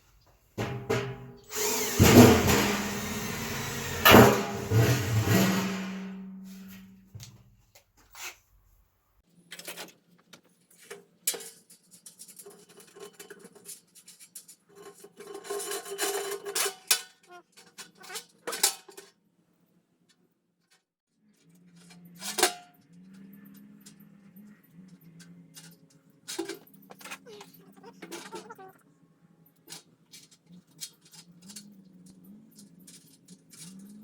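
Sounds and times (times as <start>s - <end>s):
sharp clicks and knocks: 0.6s - 6.3s
metal clinking and scraping: 0.6s - 6.9s, 10.8s - 17.0s, 21.5s - 28.6s, 29.6s - 34.0s.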